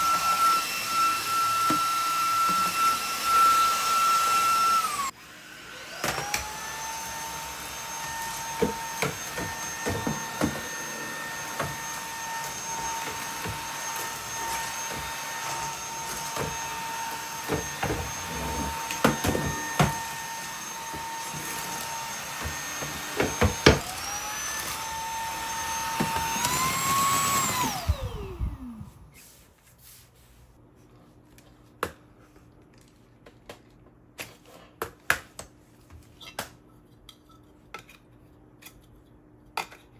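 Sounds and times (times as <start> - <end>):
vacuum cleaner whining: 0.0 - 29.4.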